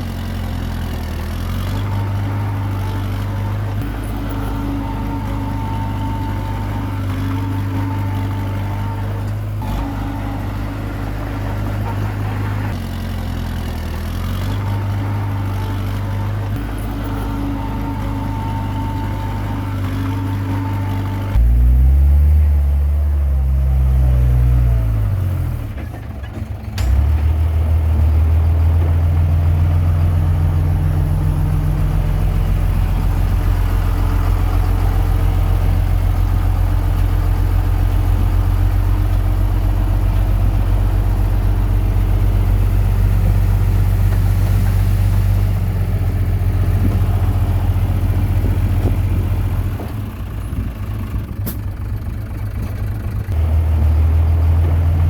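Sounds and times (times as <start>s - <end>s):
bulldozer diesel engine working: 0.0s - 55.0s.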